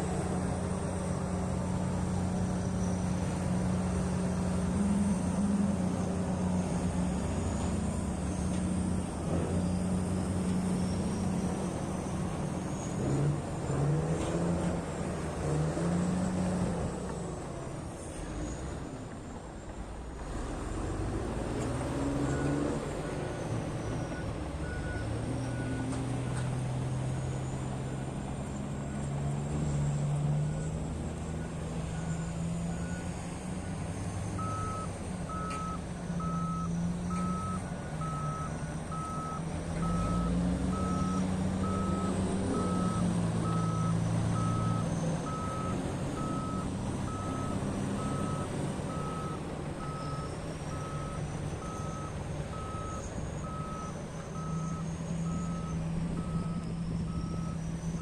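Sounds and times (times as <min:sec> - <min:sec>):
heavy diesel machinery running: 0:00.0 - 0:58.0
reversing alarm beeping: 0:29.7 - 0:58.0.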